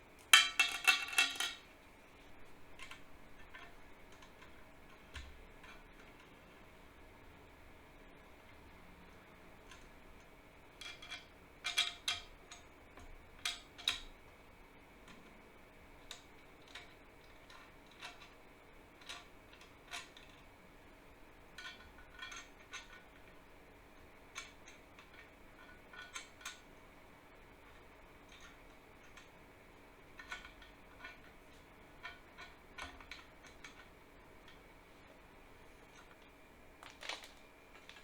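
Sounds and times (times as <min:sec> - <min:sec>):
small tools clinking on workbench: 0:00.2 - 0:01.6.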